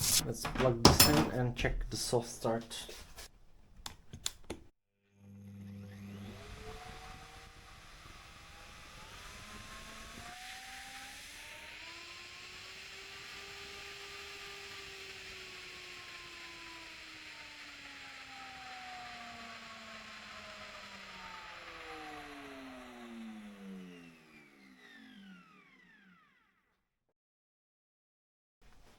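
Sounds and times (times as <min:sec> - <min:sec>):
electric router motor whine: 0:05.2 - 0:26.8.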